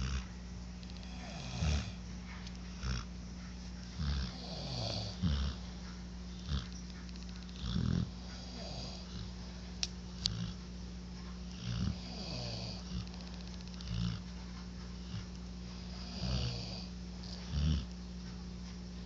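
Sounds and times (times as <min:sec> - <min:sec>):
steady low hum: 0:00.0 - 0:19.0
short low snores: 0:01.0 - 0:02.0
softer breathy snores: 0:01.0 - 0:02.0, 0:16.0 - 0:17.9.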